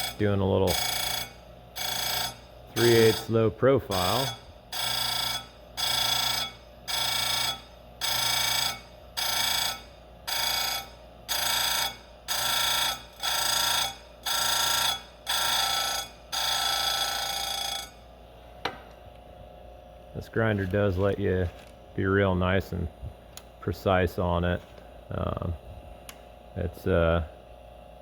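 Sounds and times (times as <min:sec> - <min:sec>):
grinding wheel whining on chain: 0:00.0 - 0:18.0
grinder motor humming: 0:00.0 - 0:18.1.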